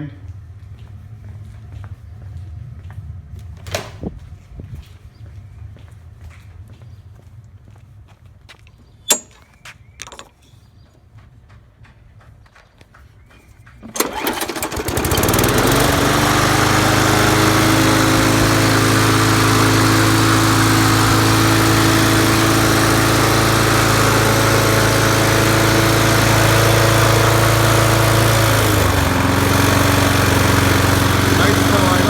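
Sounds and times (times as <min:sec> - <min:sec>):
lawn mower engine starting and running: 0:09.1 - 0:09.4, 0:13.8 - 0:32.0.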